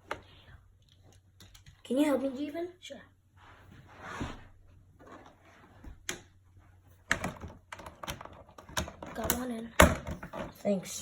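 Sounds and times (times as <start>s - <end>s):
plastic parts rustling and clicking: 7.1s - 10.6s.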